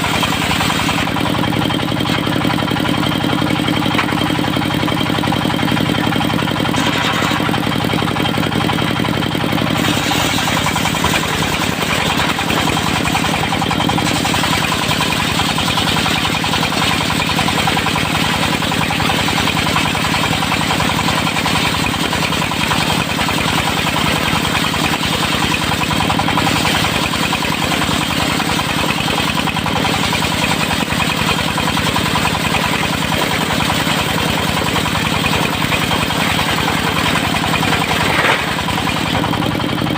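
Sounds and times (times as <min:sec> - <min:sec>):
saw blade cutting wood: 0:00.0 - 0:02.7, 0:03.8 - 0:04.7, 0:06.0 - 0:07.8, 0:09.6 - 0:17.0, 0:36.2 - 0:39.3
diesel sawmill engine running: 0:00.0 - 0:39.9.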